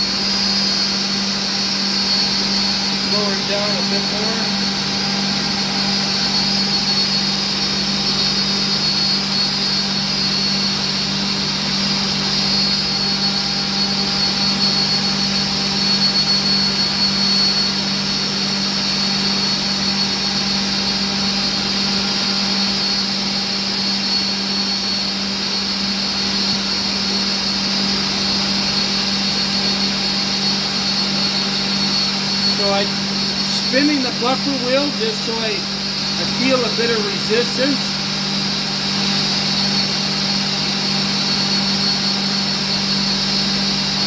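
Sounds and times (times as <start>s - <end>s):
machinery high whine: 0.0s - 44.0s
machinery low hum: 32.0s - 38.3s.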